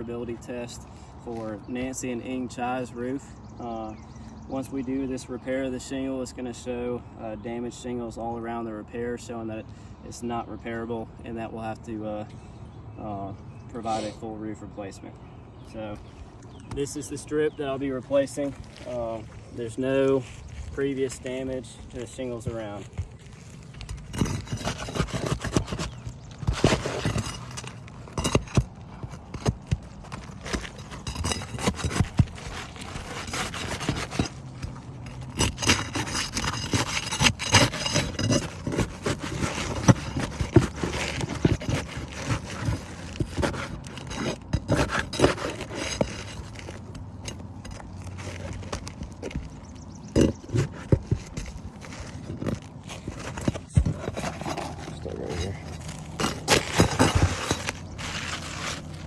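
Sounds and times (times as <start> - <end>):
shingles scraping and knocking: 15.7 - 59.0.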